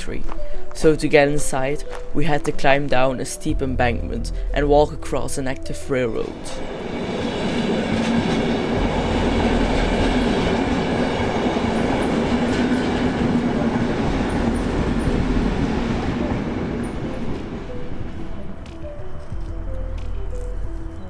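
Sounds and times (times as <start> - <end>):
train wheels rumbling: 6.2 - 21.0
low hum: 6.4 - 21.0.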